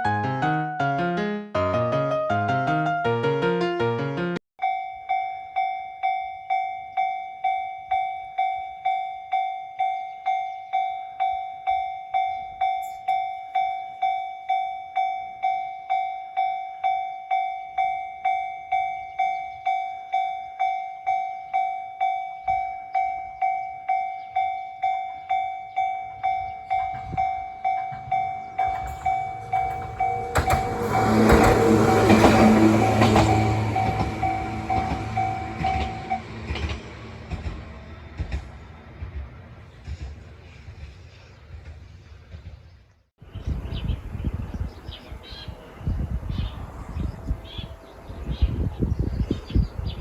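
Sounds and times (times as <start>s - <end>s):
level crossing bell ringing: 4.6s - 31.2s
train rumble: 26.0s - 50.0s.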